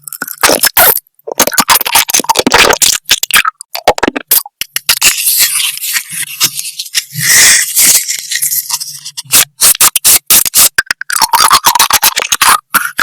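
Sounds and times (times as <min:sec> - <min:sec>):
crunchy food being chewed: 0:00.0 - 0:05.0, 0:09.3 - 0:13.0.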